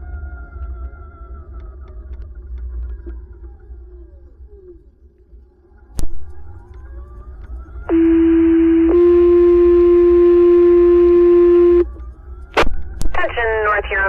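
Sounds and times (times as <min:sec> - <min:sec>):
two-tone paging tones over radio: 0:07.9 - 0:11.8.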